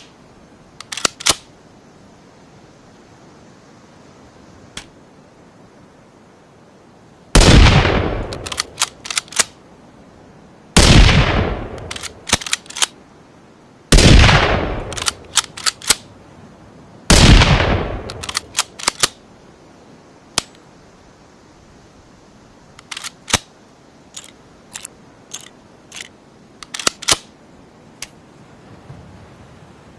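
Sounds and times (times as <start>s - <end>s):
rifle action clicking: 0.8s - 1.5s, 8.2s - 9.6s, 11.7s - 13.0s, 14.9s - 16.0s, 18.0s - 19.2s, 22.8s - 23.5s, 24.2s - 27.3s
rifle shots: 7.4s - 9.4s, 10.8s - 12.8s, 13.9s - 16.0s, 17.1s - 19.2s.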